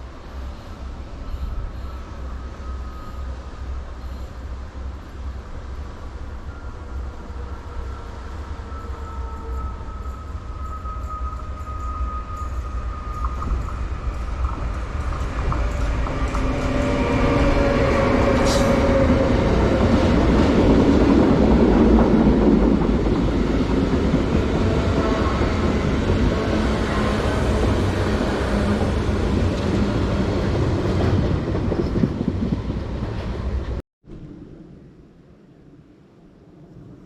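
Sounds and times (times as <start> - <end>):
train passing on rails: 0.0 - 37.0
thin high whine: 0.1 - 5.5, 6.1 - 14.6.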